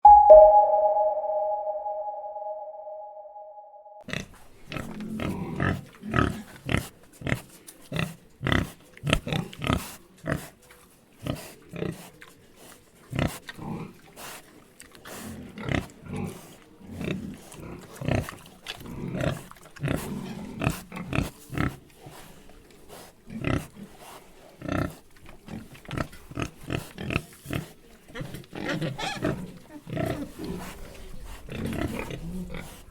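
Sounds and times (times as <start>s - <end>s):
pigs grunting: 24.6s - 32.9s.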